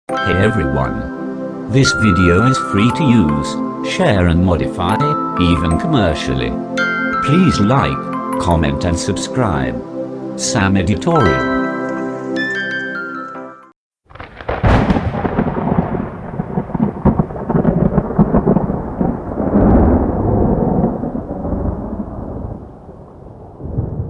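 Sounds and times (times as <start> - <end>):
lightning crack: 14.1 - 24.0
rolling thunder: 14.1 - 24.0.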